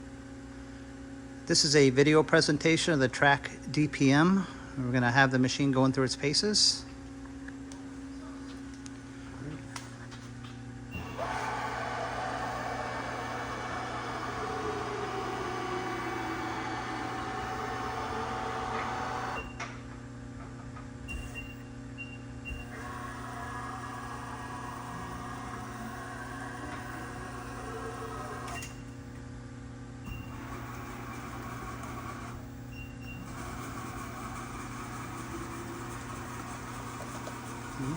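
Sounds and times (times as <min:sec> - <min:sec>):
steady electrical hum: 0:00.0 - 0:37.9
servo motor whine: 0:10.9 - 0:19.6, 0:22.5 - 0:29.0, 0:30.1 - 0:37.9.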